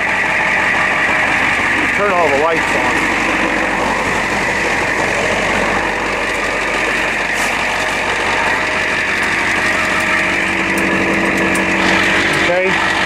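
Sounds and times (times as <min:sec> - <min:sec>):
diesel engine idling: 0:00.0 - 0:13.0.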